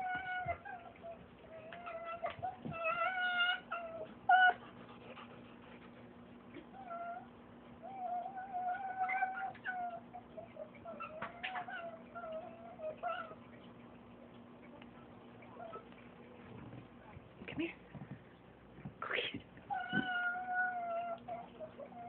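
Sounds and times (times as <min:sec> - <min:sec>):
fox whining: 0:00.0 - 0:04.7, 0:06.6 - 0:13.4, 0:19.7 - 0:22.0.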